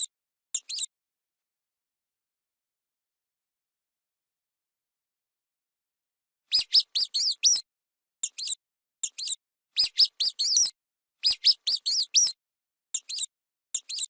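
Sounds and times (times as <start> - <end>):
rodent squeaking: 0.0 - 0.9, 6.5 - 7.6, 8.2 - 12.4, 13.0 - 14.0.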